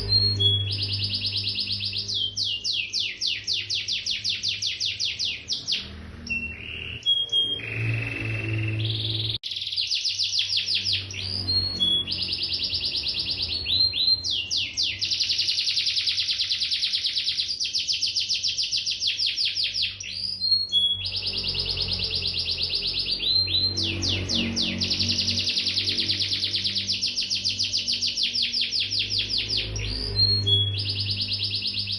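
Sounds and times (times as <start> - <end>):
canary singing: 0.0 - 31.9.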